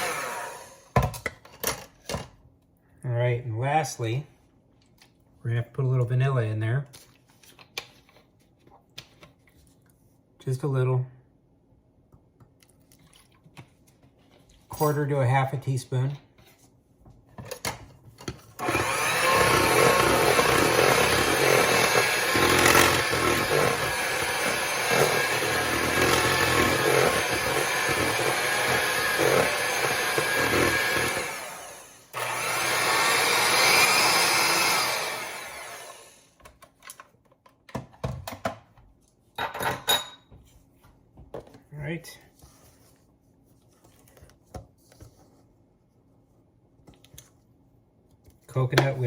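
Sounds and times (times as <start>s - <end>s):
electric hand mixer beating: 0.0s - 0.9s, 18.6s - 36.2s.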